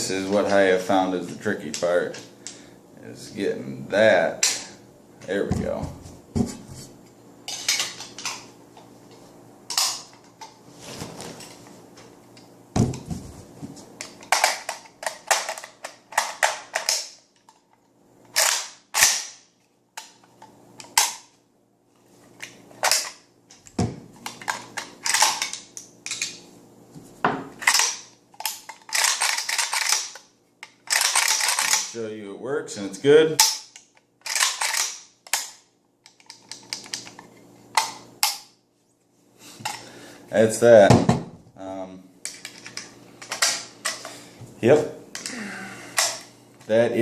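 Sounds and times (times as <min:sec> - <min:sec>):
rifle parts clicking and clacking: 0:14.0 - 0:19.4, 0:27.6 - 0:32.0, 0:33.4 - 0:38.4, 0:42.2 - 0:44.1.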